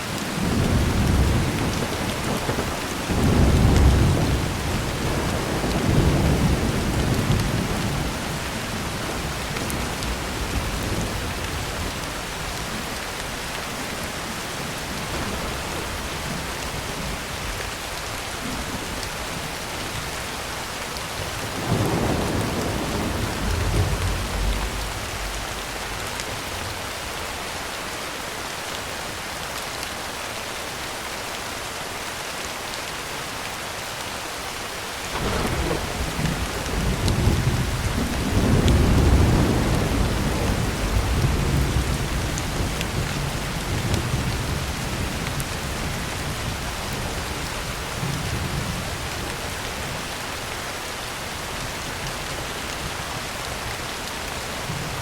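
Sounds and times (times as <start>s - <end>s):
heavy rain on a tin roof: 0.0s - 55.0s
thunder rumbling: 0.2s - 13.0s, 21.1s - 27.2s, 35.1s - 50.0s.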